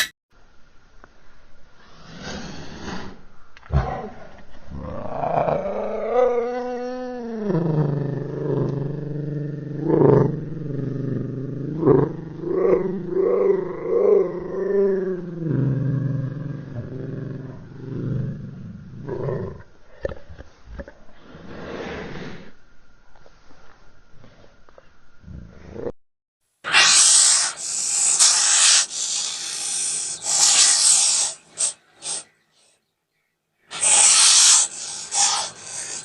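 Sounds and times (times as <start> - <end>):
creature growls: 3.7 - 21.7, 26.7 - 32.2, 33.7 - 36.0
monster roar: 33.7 - 36.0.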